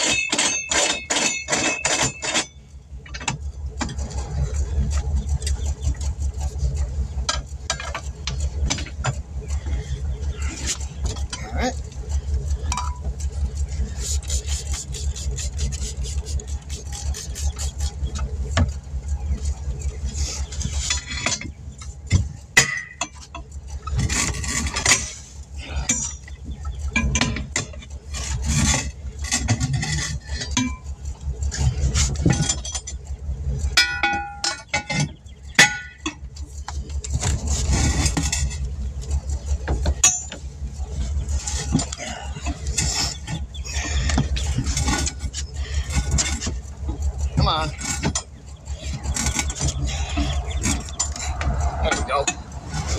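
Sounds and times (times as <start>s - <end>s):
metal tools clinking and knocking: 0.0s - 4.2s, 12.6s - 13.6s, 20.6s - 36.4s, 37.0s - 52.9s
low engine-like hum: 0.0s - 52.9s.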